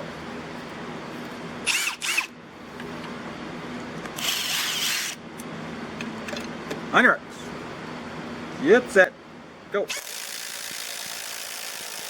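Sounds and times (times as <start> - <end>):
impact driver motor whine: 9.9 - 12.0.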